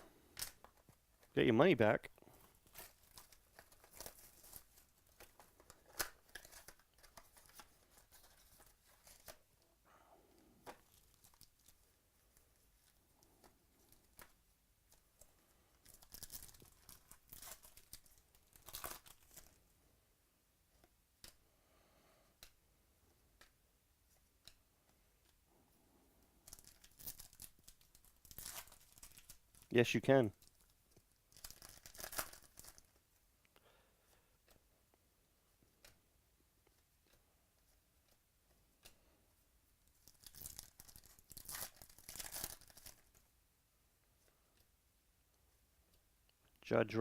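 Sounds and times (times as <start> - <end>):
trading cards handled: 2.3 - 9.5
wrappers crinkling: 2.4 - 9.4, 15.7 - 19.6, 26.4 - 29.7, 30.3 - 33.0, 39.9 - 43.2.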